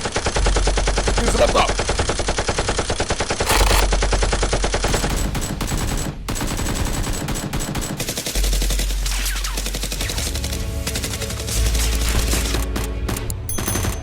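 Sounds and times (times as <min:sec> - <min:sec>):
automatic gunfire: 0:03.0 - 0:08.8.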